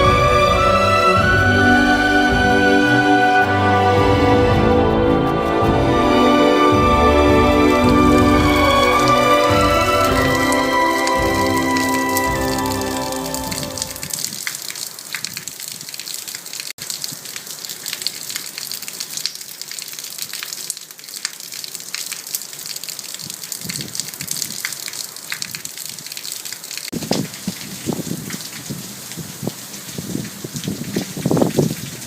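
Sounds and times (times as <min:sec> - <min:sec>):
wind buffeting microphone: 0:27.0 - 0:32.0.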